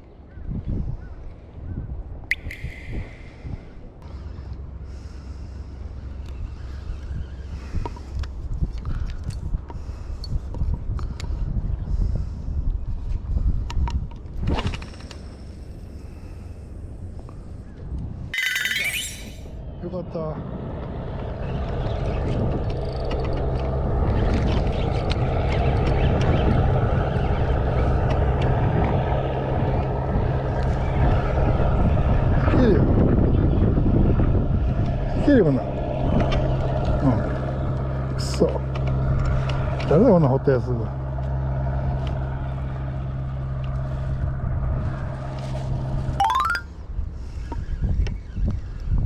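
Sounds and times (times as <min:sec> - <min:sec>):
rising run of clicks: 0:02.3 - 0:03.9, 0:18.4 - 0:19.5, 0:46.2 - 0:46.7.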